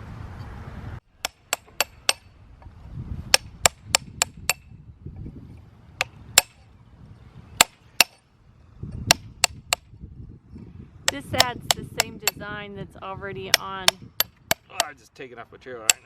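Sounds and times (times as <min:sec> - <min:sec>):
hammer striking chisel on stone: 0:01.2 - 0:02.3, 0:03.3 - 0:04.7, 0:07.6 - 0:08.2, 0:11.1 - 0:12.4, 0:13.5 - 0:14.9.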